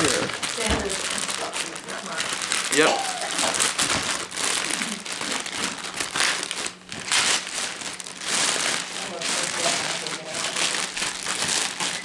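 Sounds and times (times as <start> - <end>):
gift wrapping rustling: 0.0 - 12.0.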